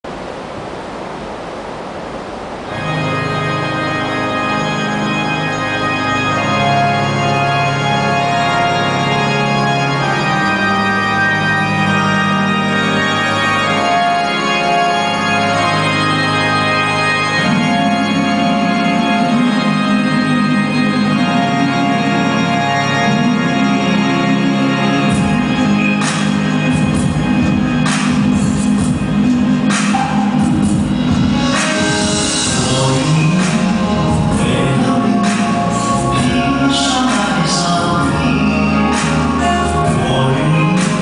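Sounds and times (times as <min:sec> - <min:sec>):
slow held organ chords: 0:00.1 - 0:41.0.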